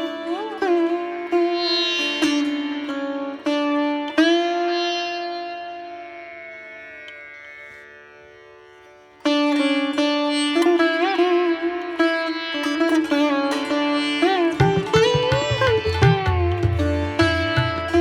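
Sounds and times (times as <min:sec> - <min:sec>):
plucked string instrument: 0:00.0 - 0:18.0.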